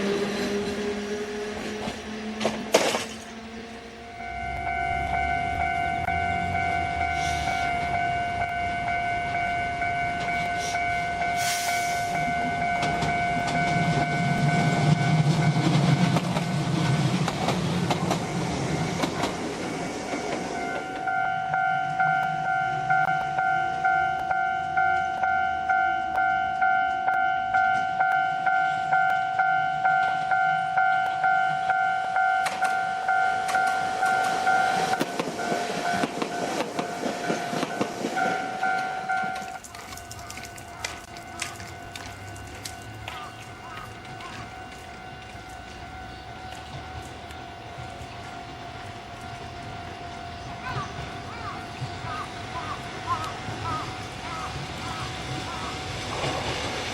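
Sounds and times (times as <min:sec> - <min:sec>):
train wheels rumbling over rail joints: 0:00.0 - 0:21.2, 0:33.4 - 0:56.9
level-crossing bell ringing: 0:04.0 - 0:16.6, 0:18.1 - 0:55.9.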